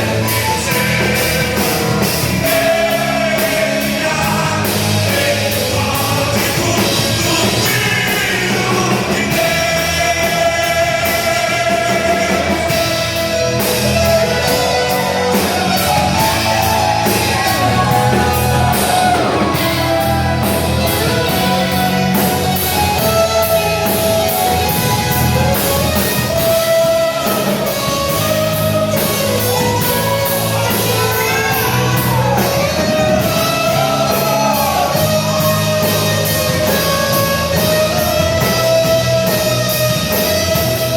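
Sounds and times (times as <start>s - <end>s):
electric guitar: 0.0s - 40.9s
person singing: 0.0s - 40.9s
rock worship song by band: 0.0s - 40.9s.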